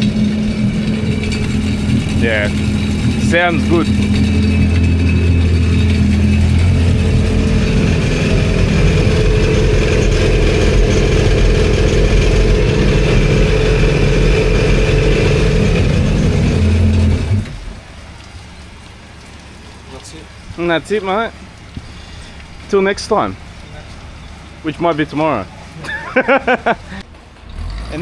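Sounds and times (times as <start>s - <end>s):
jet ski engine running: 0.0s - 18.0s.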